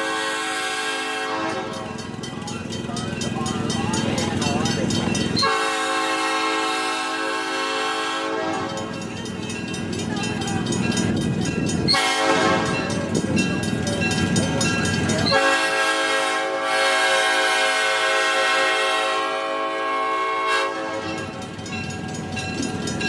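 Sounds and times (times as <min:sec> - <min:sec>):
locomotive air horn blasts: 0:00.0 - 0:01.9, 0:05.4 - 0:08.9, 0:11.9 - 0:12.9, 0:15.3 - 0:21.3.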